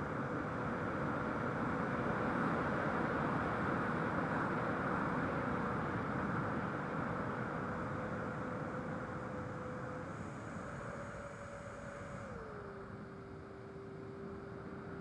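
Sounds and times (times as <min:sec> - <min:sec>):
model aircraft airflow and motor: 0:05.2 - 0:15.0.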